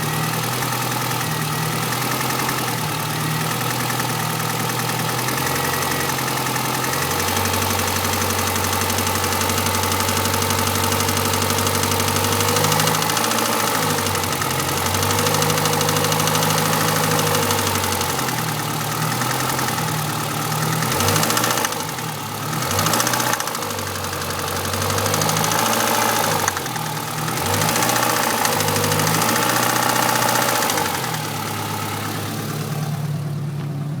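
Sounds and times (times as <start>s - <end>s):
car engine idling and revving: 0.0s - 34.0s.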